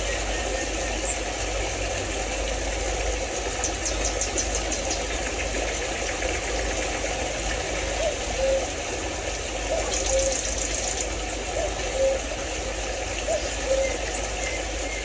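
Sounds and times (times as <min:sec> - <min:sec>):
stream water rushing: 0:00.0 - 0:15.0
bird trilling: 0:08.0 - 0:08.7, 0:09.7 - 0:12.3, 0:13.3 - 0:15.0.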